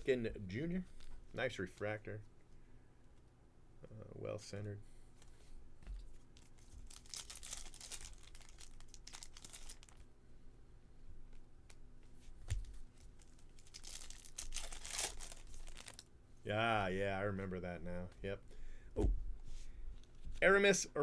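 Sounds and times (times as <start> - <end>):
wrappers crinkling: 6.2 - 10.1, 11.6 - 16.1
card packs torn open: 6.9 - 10.0, 13.2 - 16.1.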